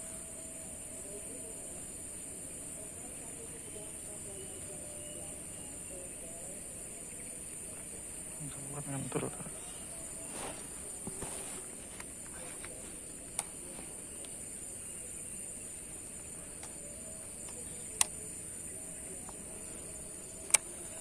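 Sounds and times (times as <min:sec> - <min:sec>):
insects chirring: 0:00.0 - 0:21.0
sharp clicks: 0:11.0 - 0:14.4, 0:15.6 - 0:21.0.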